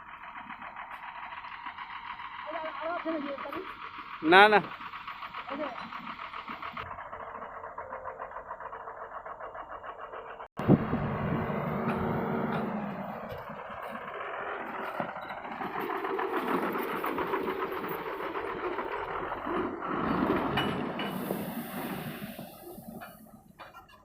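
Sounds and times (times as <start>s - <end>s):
heavy diesel engine running: 0.0s - 24.0s.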